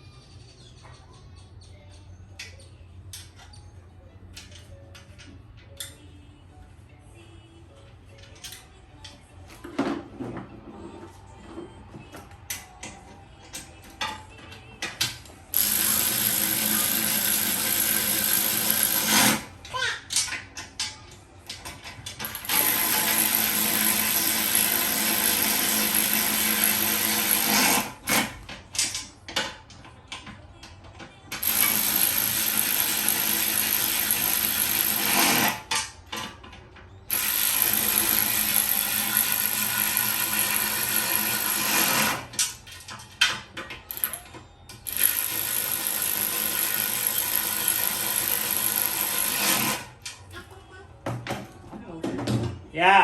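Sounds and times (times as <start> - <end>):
power tool running on bolts: 15.5 - 19.5, 22.2 - 28.3, 31.4 - 35.7, 37.1 - 42.5, 44.8 - 50.0.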